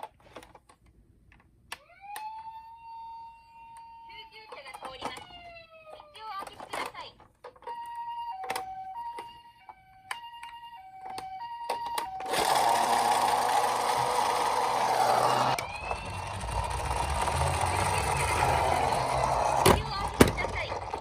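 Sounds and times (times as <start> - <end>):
toy electronic two-tone siren: 1.8 - 6.3, 7.6 - 21.0
toy car wheels whirring and rattling: 12.0 - 21.0.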